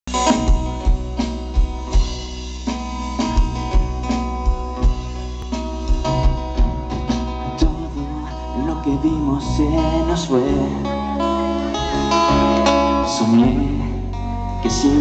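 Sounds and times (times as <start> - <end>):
steady drum beat: 0.1 - 9.6
guitar chords: 0.1 - 15.0.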